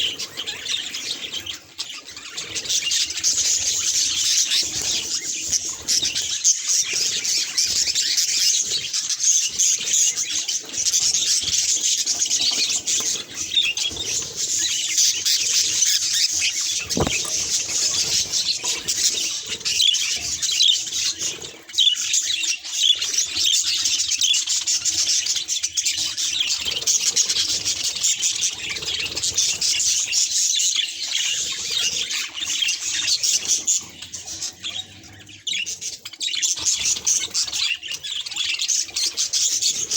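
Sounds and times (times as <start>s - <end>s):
budgerigars chattering: 16.6s - 20.8s.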